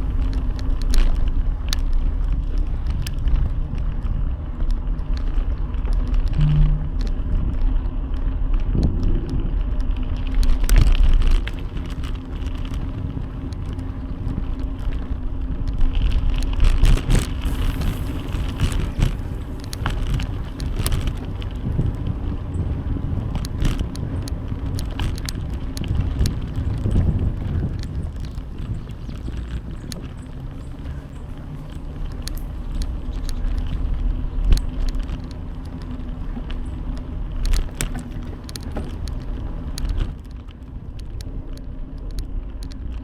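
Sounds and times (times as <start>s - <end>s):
bicycle rattling clicks: 0.0s - 6.4s, 9.2s - 43.0s
road and wind rumble: 0.0s - 43.0s.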